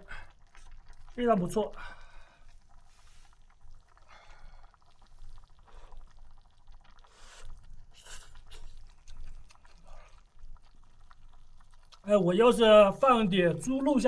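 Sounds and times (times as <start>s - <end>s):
slurping sips of soup: 2.5s - 10.8s.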